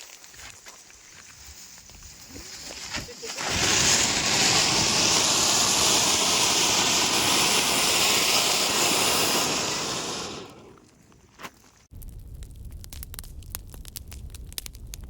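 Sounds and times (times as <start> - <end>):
firework jet hissing: 0.5 - 11.0.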